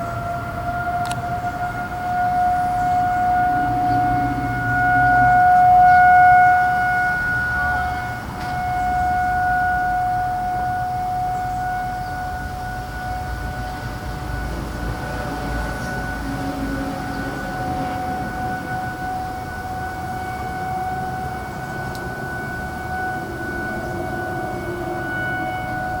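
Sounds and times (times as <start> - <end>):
distant warning siren: 0.0 - 26.0
low rumble: 1.9 - 7.0.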